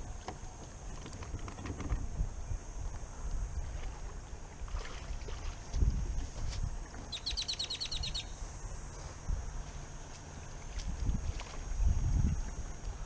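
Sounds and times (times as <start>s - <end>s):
bird trilling: 7.1s - 8.4s.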